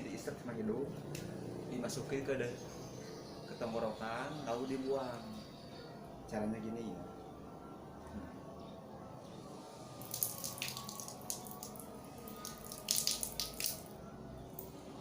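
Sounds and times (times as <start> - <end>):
water splashing and dripping: 10.0 - 13.9.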